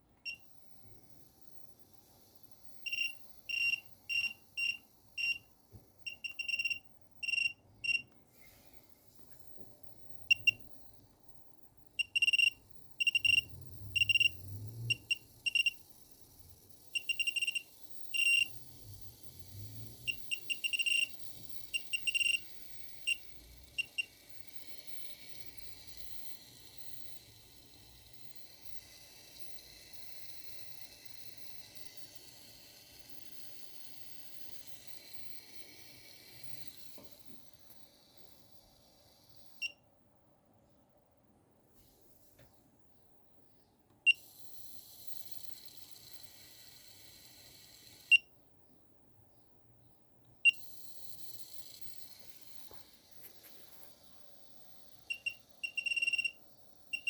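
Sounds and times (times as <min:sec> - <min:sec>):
short high beeps and chirps: 0:02.9 - 0:05.5, 0:06.1 - 0:08.1, 0:10.3 - 0:10.7, 0:12.0 - 0:15.8, 0:17.0 - 0:17.6, 0:18.2 - 0:18.5, 0:20.1 - 0:21.1, 0:21.7 - 0:22.4, 0:55.1 - 0:57.0.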